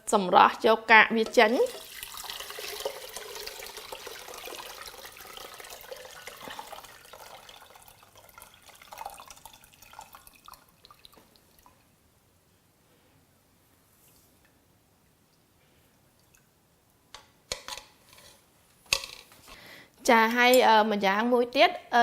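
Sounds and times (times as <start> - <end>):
liquid pouring through strainer: 1.6 - 11.8.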